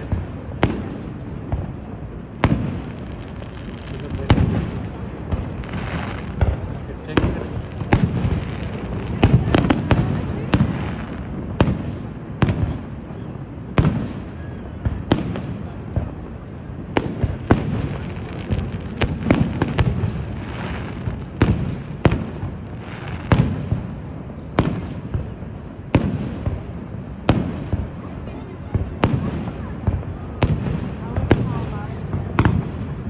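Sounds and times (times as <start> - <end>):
fireworks bangs: 0.0 - 33.0.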